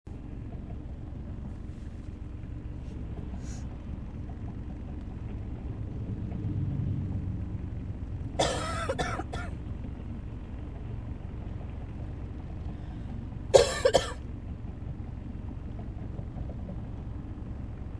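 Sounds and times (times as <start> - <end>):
person coughing: 8.4 - 9.6, 13.6 - 14.2.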